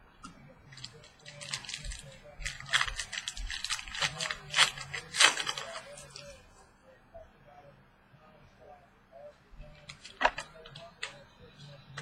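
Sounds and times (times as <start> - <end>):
card pack wrapping crinkling: 0.7 - 6.4.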